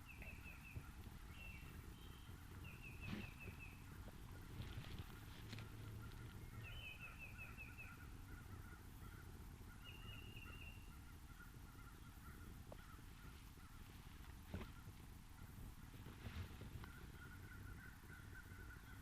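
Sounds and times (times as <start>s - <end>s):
faint bird calling: 0.0s - 19.0s
low wind rumble: 0.0s - 19.0s.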